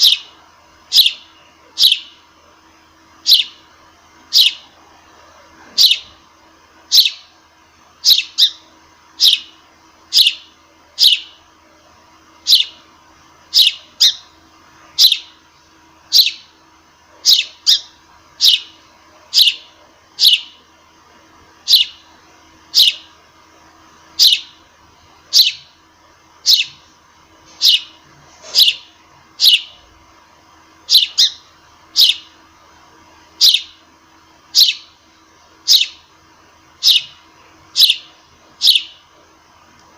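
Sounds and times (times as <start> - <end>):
sparrow chirping: 0.0 - 0.3, 0.9 - 2.2, 3.2 - 3.6, 4.3 - 4.7, 5.7 - 6.2, 6.9 - 7.4, 8.0 - 11.4, 12.4 - 12.8, 13.5 - 14.4, 15.0 - 15.4, 16.1 - 16.5, 17.2 - 20.6, 21.6 - 22.1, 22.7 - 23.1, 24.2 - 24.6, 25.3 - 25.8, 26.4 - 26.8, 27.5 - 29.8, 30.9 - 32.4, 33.4 - 33.8, 34.5 - 35.0, 35.6 - 36.1, 36.8 - 39.0.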